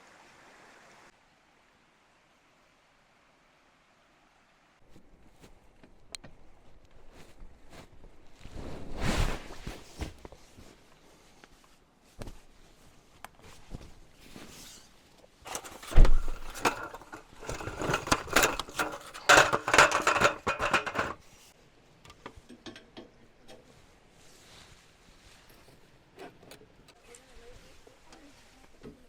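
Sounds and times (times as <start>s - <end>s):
dense rustling and rattling: 15.4s - 21.4s
gear thudding: 15.5s - 21.2s.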